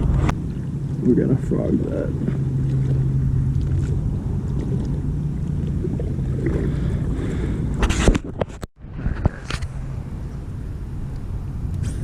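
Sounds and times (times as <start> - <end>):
electric boat motor humming: 0.0 - 7.8
wind on microphone: 0.0 - 12.0.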